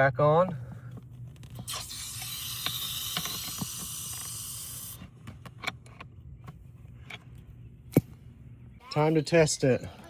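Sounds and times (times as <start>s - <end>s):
water hissing through pipe: 1.6s - 5.0s.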